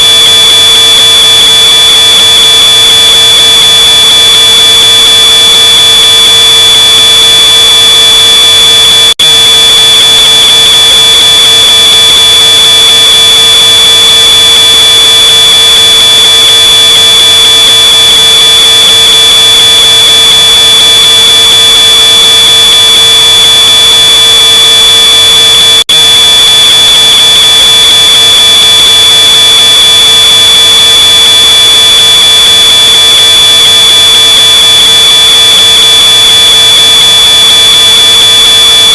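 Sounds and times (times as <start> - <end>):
smoke alarm high-pitched tone: 0.0 - 38.9.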